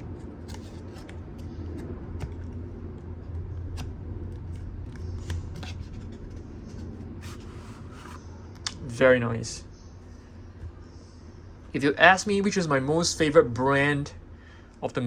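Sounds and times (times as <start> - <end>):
trading card packaging handled: 0.0 - 8.2
steady low hum: 0.0 - 15.0.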